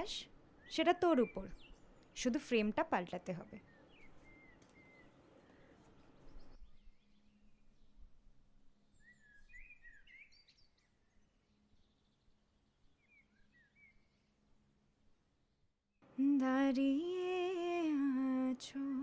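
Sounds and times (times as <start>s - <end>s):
low background hiss: 0.0s - 13.4s, 14.0s - 19.0s
faint birds chirping: 0.0s - 14.8s.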